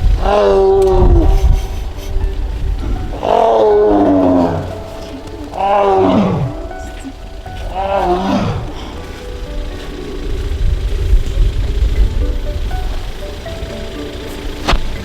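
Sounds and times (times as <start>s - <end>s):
tiger calling: 0.0s - 15.0s.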